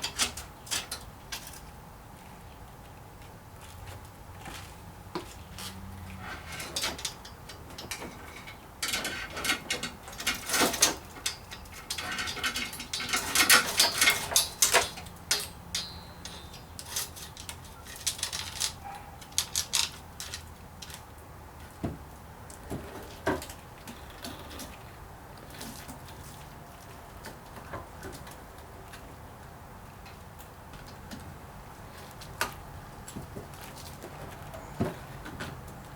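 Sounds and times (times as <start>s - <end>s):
metal chain clinking and rattling: 6.5s - 20.5s.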